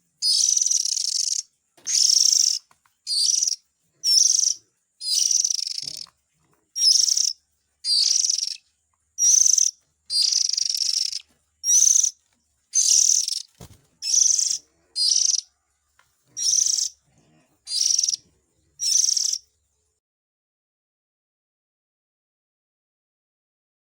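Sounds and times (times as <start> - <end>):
bird harsh rasping calls: 0.2 - 6.2, 6.8 - 8.6, 9.2 - 12.2, 12.8 - 15.5, 16.3 - 17.0, 17.6 - 18.2, 18.8 - 19.4.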